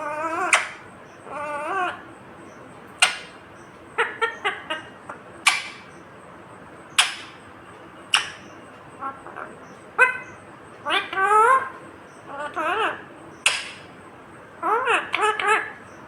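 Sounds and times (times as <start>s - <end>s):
parakeet chirps: 0.0s - 6.0s, 6.9s - 7.4s, 8.1s - 14.0s.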